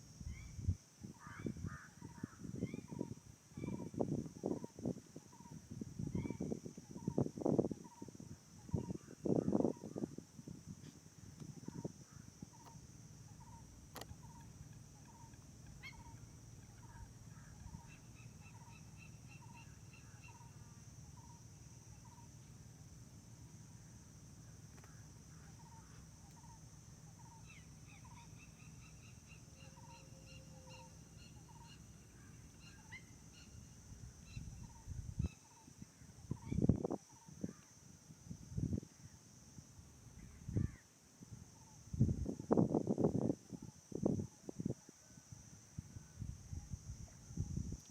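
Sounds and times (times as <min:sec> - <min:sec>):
insect-like hiss: 0:00.0 - 0:47.9
bird trilling: 0:12.6 - 0:20.5.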